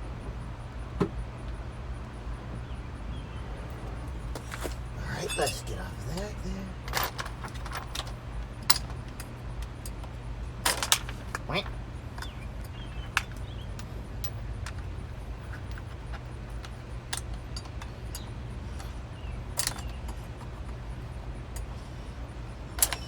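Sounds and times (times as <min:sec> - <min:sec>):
steady low hum: 0:00.0 - 0:23.0
metallic clinks of hand tools: 0:04.5 - 0:09.0, 0:19.6 - 0:20.2, 0:22.8 - 0:23.0.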